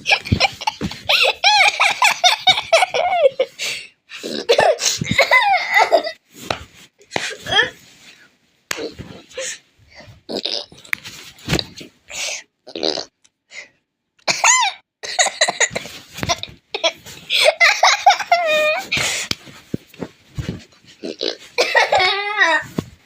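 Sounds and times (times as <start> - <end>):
burp-like noises: 10.3 - 10.9, 12.6 - 13.2, 21.0 - 21.4.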